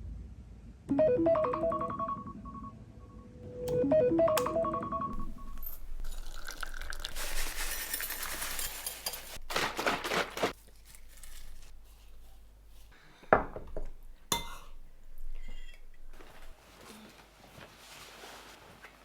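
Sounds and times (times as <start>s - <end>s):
glassware clinking and rattling: 5.2s - 9.4s, 13.4s - 16.0s.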